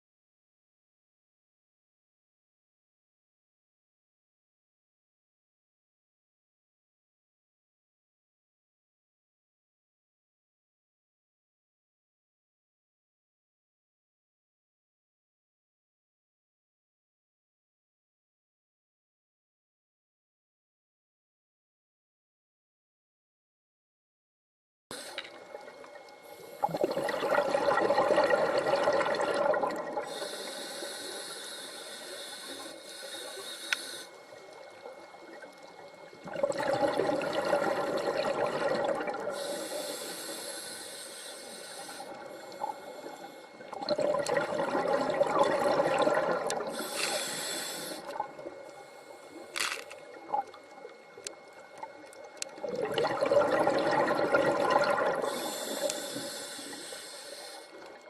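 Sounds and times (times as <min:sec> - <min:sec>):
regulator inhale hiss: 0:24.9 - 0:25.5, 0:26.2 - 0:26.8, 0:30.0 - 0:34.4, 0:39.2 - 0:43.7, 0:46.7 - 0:49.9, 0:55.2 - 0:58.0
exhale bubbling rush: 0:26.4 - 0:34.1, 0:36.2 - 0:48.5, 0:52.6 - 0:57.8.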